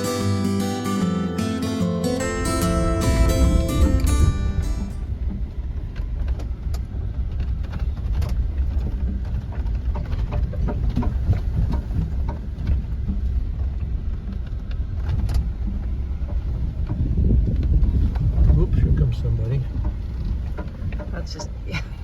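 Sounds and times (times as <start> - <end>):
vehicle rumbling on dirt road: 0.0 - 22.0
knocks and rattles: 4.9 - 22.0.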